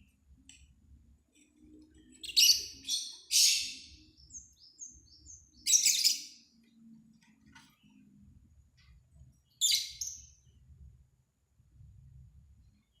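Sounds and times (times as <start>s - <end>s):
lovebirds chirping: 1.9s - 6.4s, 9.5s - 10.3s.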